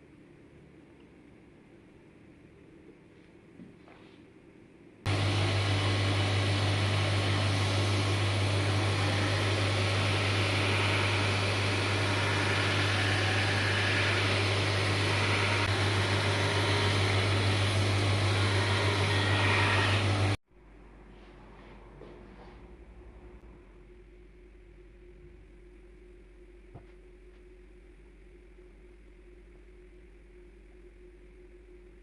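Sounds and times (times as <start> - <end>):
power tool running with hum and hiss: 5.1 - 20.4.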